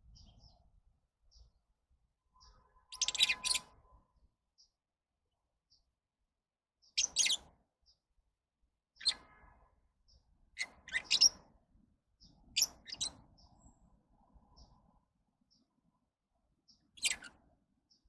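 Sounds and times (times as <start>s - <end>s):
faint bird peeps: 2.3s - 4.0s, 6.8s - 7.5s, 9.0s - 9.6s, 10.6s - 11.4s, 12.2s - 13.7s, 16.7s - 18.0s
birds chirping: 2.4s - 3.8s, 6.9s - 7.5s, 9.0s - 11.4s, 12.2s - 15.8s, 16.7s - 18.0s.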